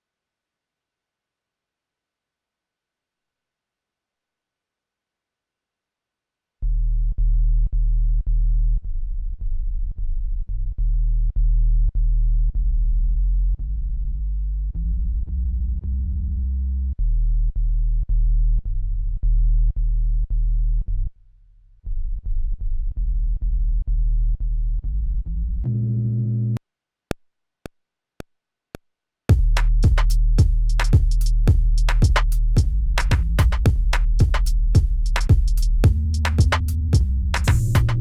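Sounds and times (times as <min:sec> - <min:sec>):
deep synth bass line: 0:23.8 - 0:26.6, 0:29.3 - 0:38.0.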